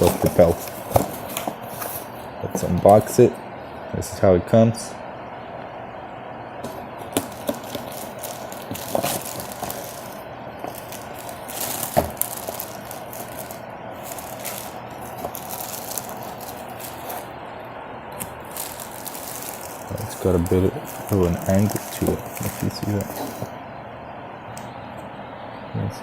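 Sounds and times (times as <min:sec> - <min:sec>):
packaging rattling and scraping: 0:00.0 - 0:03.2, 0:06.6 - 0:17.3, 0:18.2 - 0:23.5.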